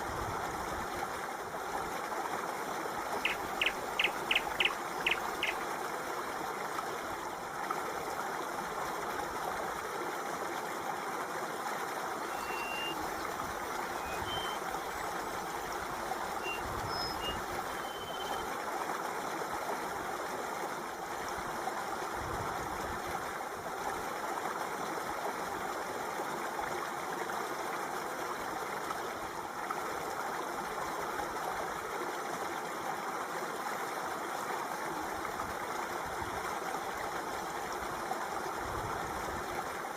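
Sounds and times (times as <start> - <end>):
water flowing steadily: 0.0 - 39.9
faint high-pitched chirps: 12.3 - 13.0, 14.0 - 14.6, 16.4 - 18.4.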